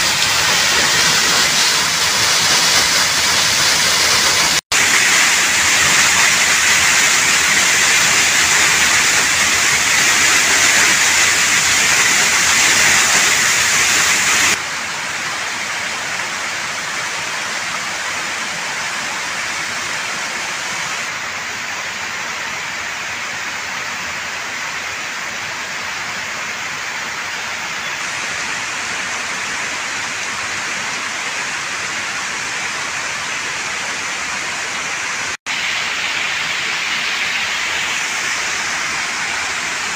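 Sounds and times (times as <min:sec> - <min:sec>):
waterfall rushing: 0:00.0 - 0:24.7, 0:25.4 - 0:39.9.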